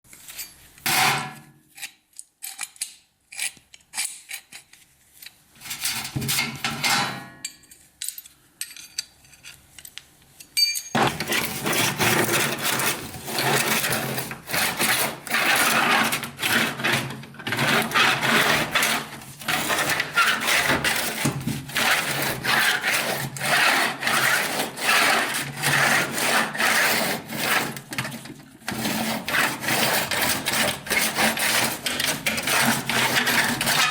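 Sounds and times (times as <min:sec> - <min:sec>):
scrapes and knocks: 0:11.0 - 0:33.9
rapid rasping strokes: 0:28.8 - 0:33.9.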